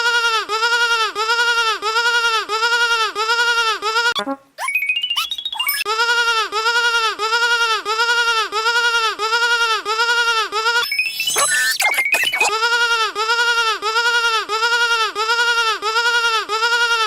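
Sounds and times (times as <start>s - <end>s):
rising stepped electronic tone: 4.6s - 5.8s, 10.8s - 12.6s.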